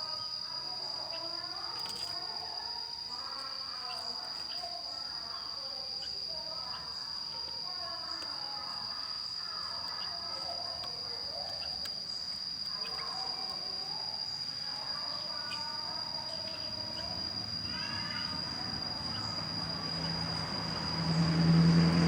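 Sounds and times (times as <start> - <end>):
high-pitched insect drone: 0.0 - 22.0
low engine hum: 18.2 - 22.0.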